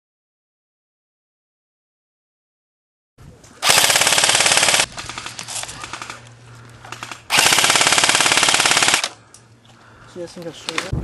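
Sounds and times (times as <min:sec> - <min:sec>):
airsoft gun firing bursts: 0:03.6 - 0:06.2, 0:06.9 - 0:09.2.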